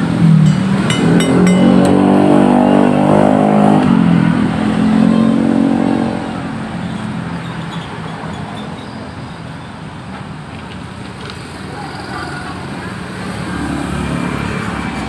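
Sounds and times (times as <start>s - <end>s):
vehicle engine revving: 0.0s - 7.2s.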